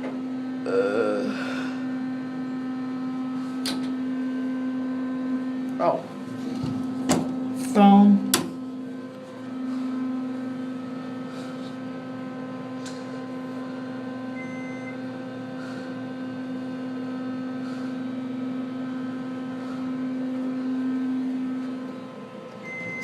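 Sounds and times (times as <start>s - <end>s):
elevator hum: 0.6s - 23.0s
short beep: 14.4s - 15.0s, 22.7s - 23.0s.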